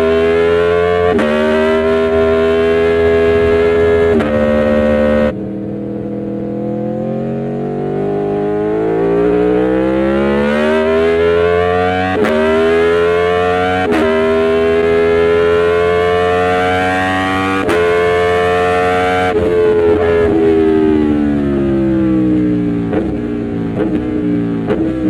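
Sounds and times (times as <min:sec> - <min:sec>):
motorcycle engine accelerating: 0:00.0 - 0:25.0
gear upshifts: 0:00.1 - 0:05.8.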